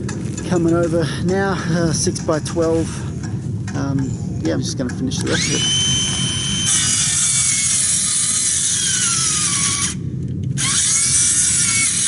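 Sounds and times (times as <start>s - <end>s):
cordless drill driving screws: 5.3s - 10.0s, 10.6s - 12.0s.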